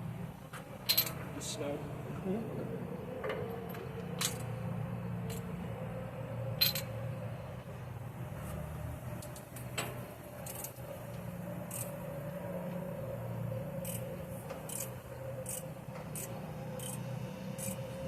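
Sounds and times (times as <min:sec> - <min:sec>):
tools clinking on bolts: 0:00.9 - 0:01.2, 0:06.6 - 0:06.9.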